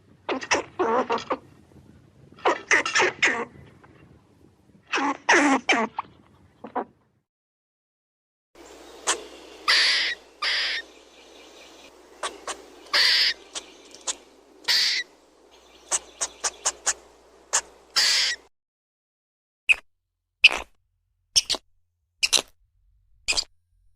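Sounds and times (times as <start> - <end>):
faint background noise: 8.6 - 18.5
squirrel barking: 8.6 - 18.5.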